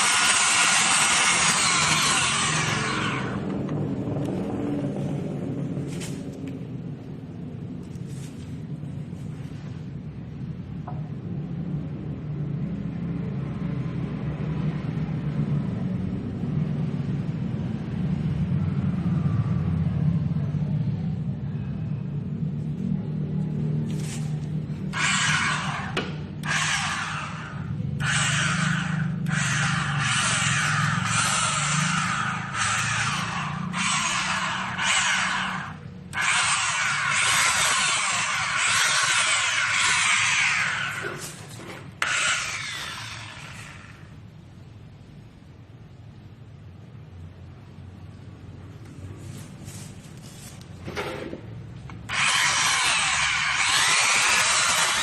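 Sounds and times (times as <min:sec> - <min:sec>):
orbital sander humming: 0:00.0 - 0:03.4, 0:52.1 - 0:55.0
sandpaper rubbing: 0:49.2 - 0:50.6.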